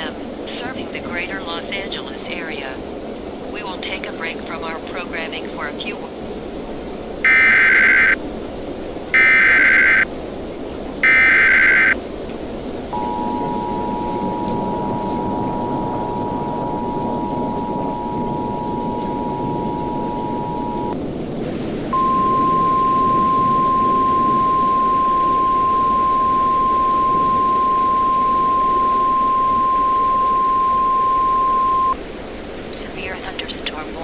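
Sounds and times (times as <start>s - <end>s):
steady hiss: 0.0s - 34.0s
weather radio alarm tone: 7.2s - 8.3s, 9.1s - 10.1s, 11.0s - 12.0s, 12.8s - 21.0s, 21.9s - 32.0s
two-tone alert signal: 7.3s - 8.2s, 9.2s - 10.0s, 11.0s - 12.0s, 13.0s - 21.0s, 22.0s - 32.0s.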